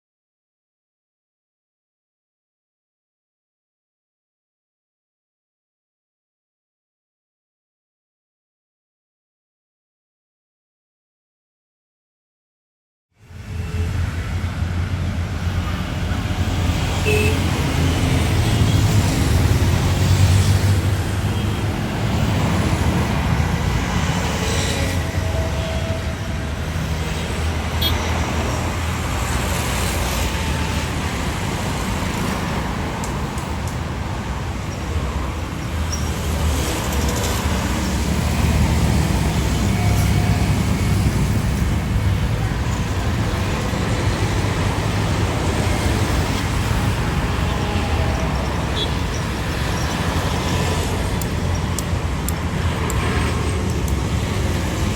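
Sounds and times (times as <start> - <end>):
traffic noise: 13.2 - 54.9.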